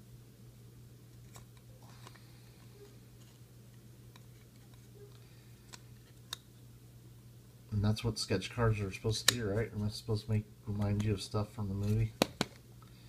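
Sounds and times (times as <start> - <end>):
low steady hum: 0.0 - 13.0
trading cards clicking and rustling: 10.7 - 12.6.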